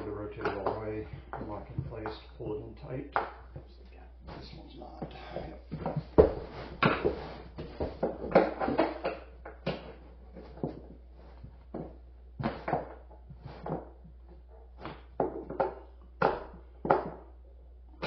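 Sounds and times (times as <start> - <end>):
shelf panels knocking and clunking: 5.7 - 10.9.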